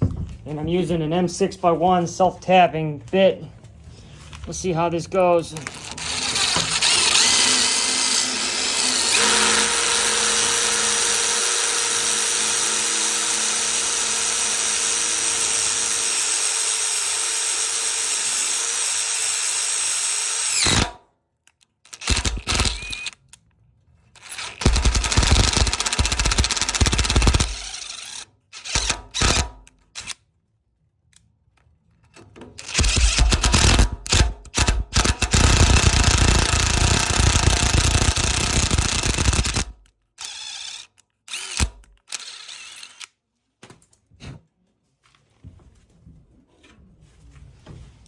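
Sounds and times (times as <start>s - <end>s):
power drill whining: 5.5s - 21.0s, 21.9s - 23.2s, 24.2s - 30.2s, 32.6s - 43.1s.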